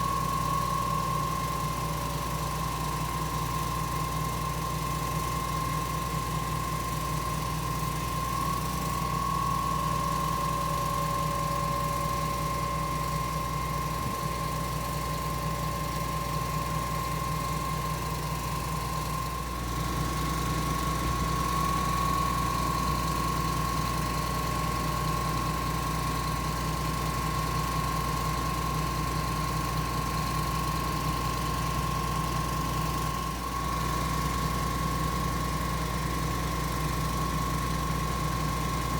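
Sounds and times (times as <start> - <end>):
engine drone: 8.2 - 19.4.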